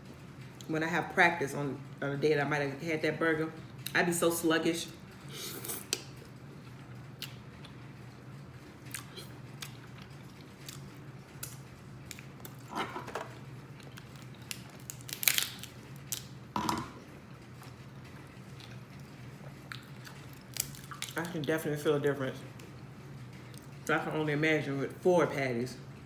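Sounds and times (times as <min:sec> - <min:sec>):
low steady hum: 0:00.0 - 0:26.0
person chewing food: 0:08.8 - 0:12.7, 0:17.6 - 0:21.2.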